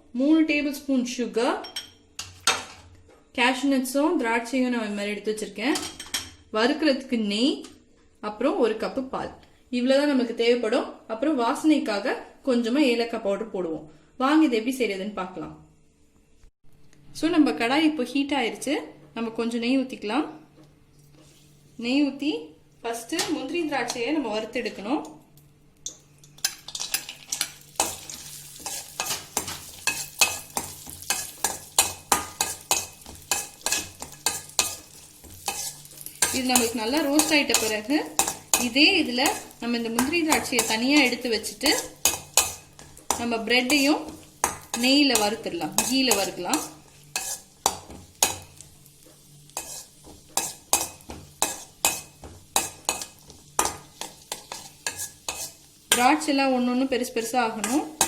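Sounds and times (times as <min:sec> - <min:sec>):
nuts frying and sizzling: 0:25.4 - 0:58.0
spoon scraping a pan: 0:25.9 - 0:56.3, 0:57.5 - 0:58.0.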